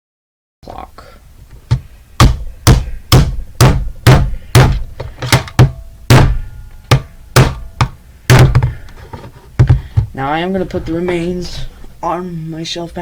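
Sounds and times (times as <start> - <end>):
hammer smashing alarm clock: 2.2 - 8.7.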